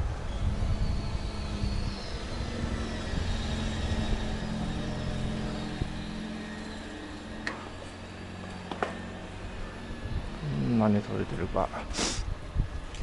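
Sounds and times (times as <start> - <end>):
wind buffeting microphone: 0.0 - 7.0, 7.6 - 13.0
vehicle engine running: 1.6 - 11.6.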